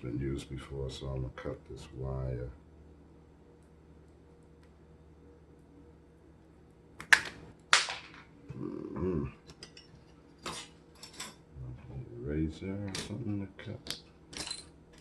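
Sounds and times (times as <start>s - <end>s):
person murmuring: 8.5s - 9.4s.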